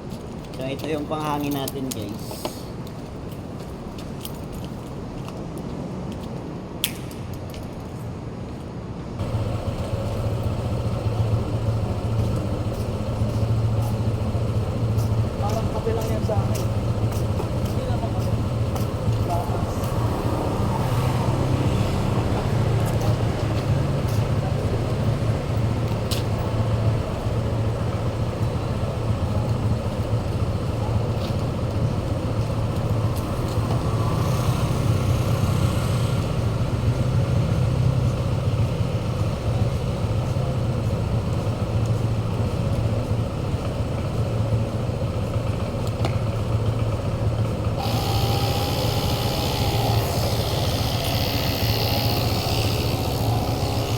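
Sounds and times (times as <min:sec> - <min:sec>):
motor humming: 0:09.2 - 0:30.8, 0:47.7 - 0:53.9.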